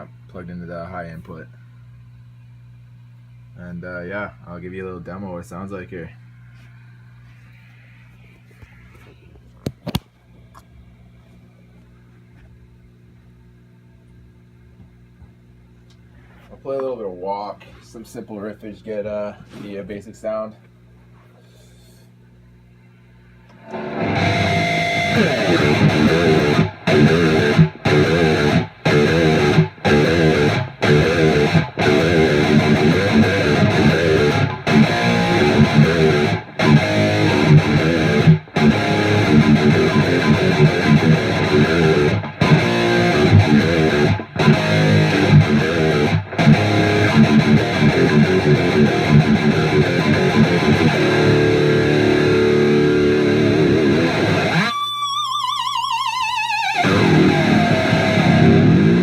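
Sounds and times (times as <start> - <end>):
distorted electric guitar riffs: 23.5 - 59.0.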